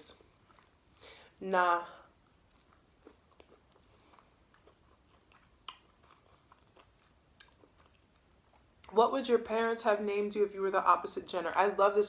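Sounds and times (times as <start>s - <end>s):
person chewing: 0.2s - 1.1s, 2.0s - 8.9s.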